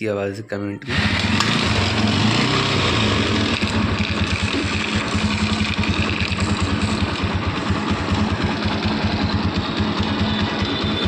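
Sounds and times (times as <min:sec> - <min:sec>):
motorcycle engine idling: 0:02.6 - 0:11.0.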